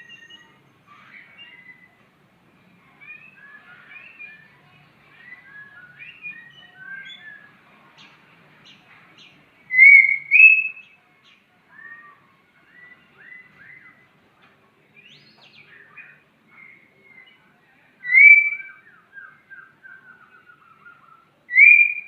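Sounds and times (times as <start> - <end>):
bird whistling: 0.0 - 0.6, 5.3 - 7.5, 9.7 - 10.8, 18.0 - 22.0.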